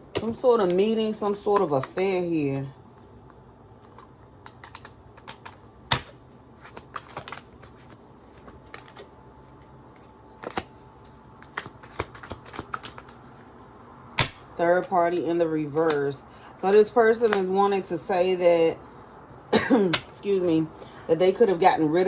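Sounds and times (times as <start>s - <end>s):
cards clicking and snapping: 3.8s - 9.1s, 10.0s - 10.7s, 11.4s - 13.2s.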